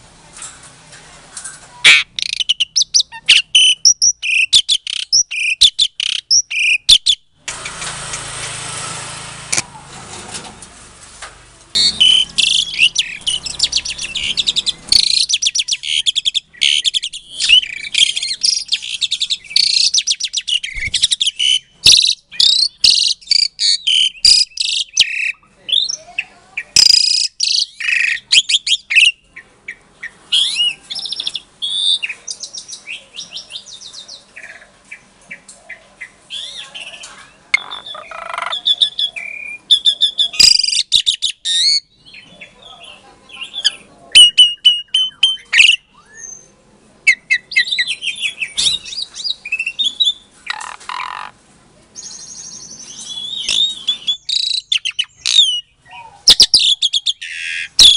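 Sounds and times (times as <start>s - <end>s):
starling chattering and whistling: 1.8s - 7.2s, 11.8s - 29.2s, 36.3s - 41.9s, 43.5s - 46.5s, 52.0s - 57.9s.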